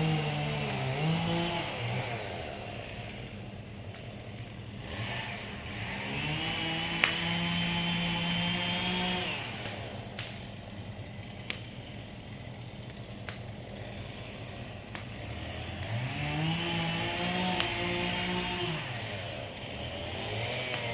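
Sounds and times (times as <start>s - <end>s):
chainsaw idling and revving: 0.0s - 20.9s
sharp clicks: 11.4s - 12.3s.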